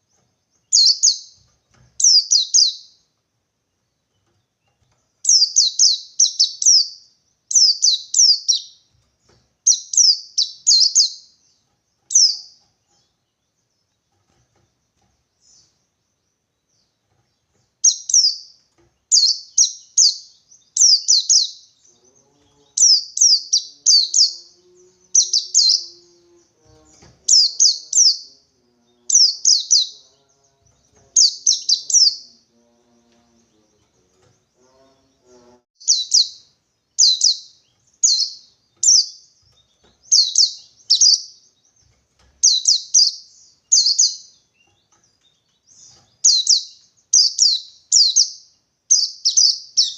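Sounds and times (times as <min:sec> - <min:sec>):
bird chirping high and quick: 0:00.7 - 0:01.4, 0:02.0 - 0:03.0, 0:05.2 - 0:08.8, 0:09.6 - 0:11.4, 0:12.1 - 0:12.6, 0:17.8 - 0:21.8, 0:22.6 - 0:26.1, 0:26.7 - 0:28.4, 0:29.0 - 0:32.4, 0:35.8 - 0:41.8, 0:42.4 - 0:49.9.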